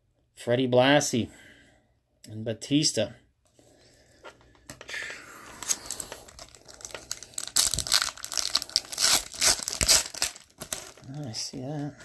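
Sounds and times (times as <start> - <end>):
foil wrapper tearing and crinkling: 5.5 - 11.3.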